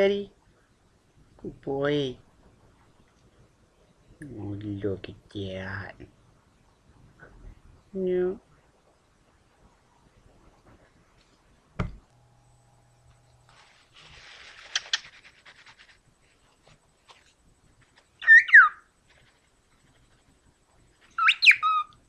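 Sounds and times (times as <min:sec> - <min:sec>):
knock: 0:11.8 - 0:12.0
rustle with clicks: 0:13.4 - 0:18.2
bird whistling: 0:18.2 - 0:18.8, 0:21.2 - 0:21.9.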